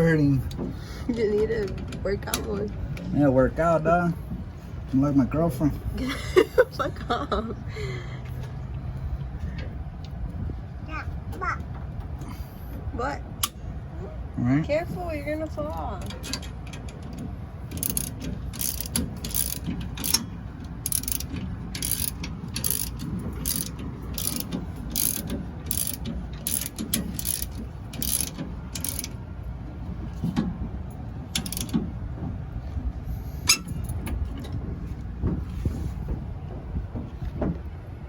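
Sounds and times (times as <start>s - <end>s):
ratchet wrench clicking: 17.7s - 29.2s, 31.3s - 31.8s.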